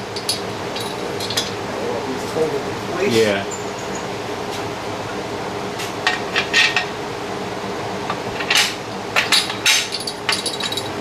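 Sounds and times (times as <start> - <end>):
steel gym parts clinking: 0.1 - 1.6, 8.4 - 11.0.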